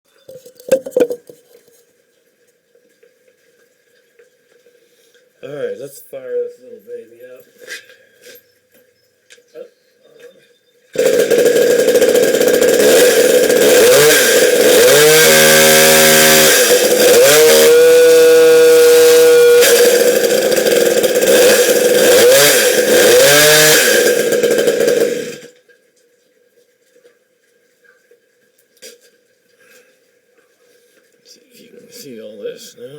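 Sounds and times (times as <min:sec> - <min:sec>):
chainsaw revving: 0:11.0 - 0:25.6.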